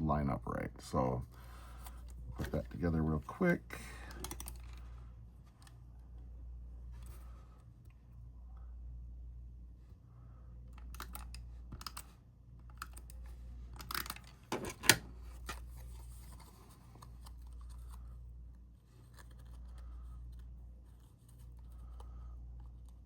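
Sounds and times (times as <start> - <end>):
paper rustling and scraping: 15.2 - 18.2, 18.8 - 21.9.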